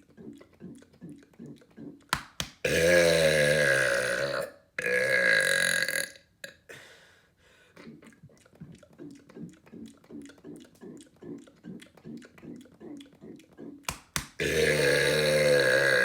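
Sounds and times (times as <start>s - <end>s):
man belching: 2.6s - 6.6s, 9.4s - 16.0s.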